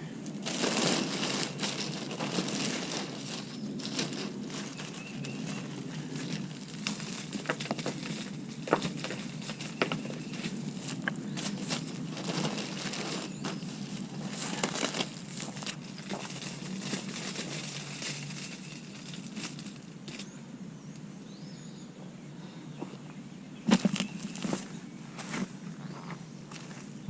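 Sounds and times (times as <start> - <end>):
mulch rustling and crackling: 0.2 - 20.3.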